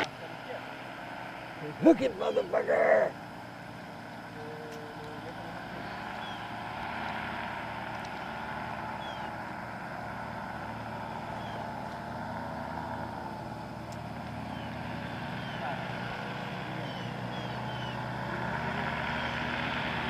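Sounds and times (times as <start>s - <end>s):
paramotor engine droning: 0.0s - 20.0s.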